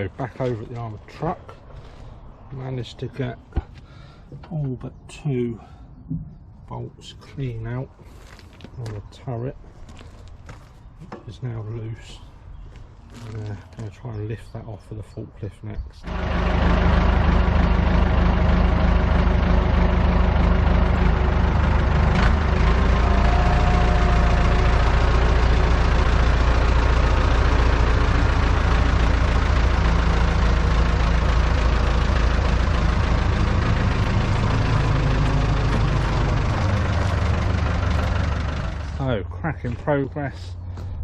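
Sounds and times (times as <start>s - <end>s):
forklift engine running: 16.0s - 39.4s.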